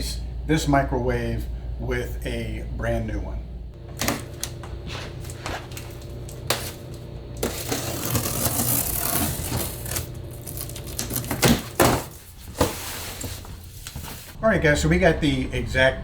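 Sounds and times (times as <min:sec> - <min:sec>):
steady low hum: 0:00.0 - 0:16.0
rustling noise: 0:04.2 - 0:14.4.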